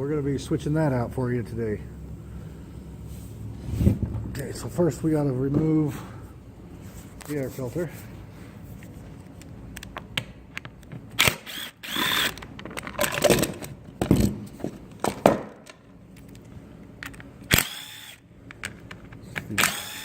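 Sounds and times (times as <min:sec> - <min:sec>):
cordless drill whirring: 0:11.2 - 0:12.4, 0:17.5 - 0:18.2, 0:19.6 - 0:20.0
plastic parts clicking and rattling: 0:12.0 - 0:17.7.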